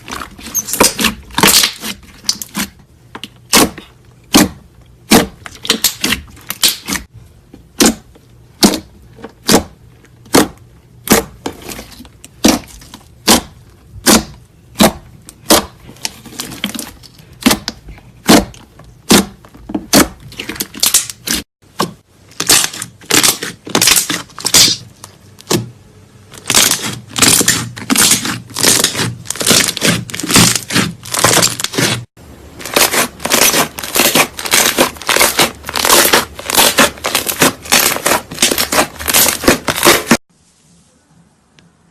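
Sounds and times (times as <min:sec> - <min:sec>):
crunchy crackling slime: 0:00.0 - 0:02.8, 0:22.3 - 0:25.6, 0:26.3 - 0:40.2.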